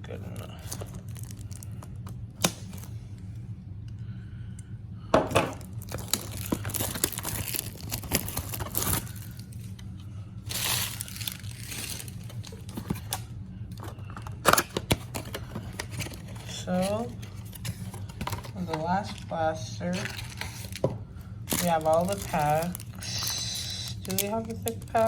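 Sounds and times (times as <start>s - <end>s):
low steady hum: 0.0s - 25.0s
plastic wrap tearing and crinkling: 0.1s - 2.9s, 5.5s - 9.8s, 10.5s - 13.2s, 14.4s - 19.2s, 20.0s - 25.0s.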